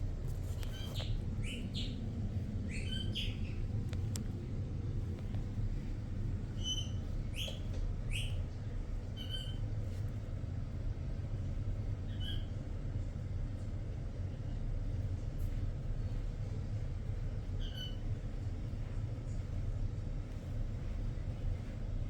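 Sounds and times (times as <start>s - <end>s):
low hum: 0.0s - 22.0s
parrot chirping: 6.6s - 8.4s.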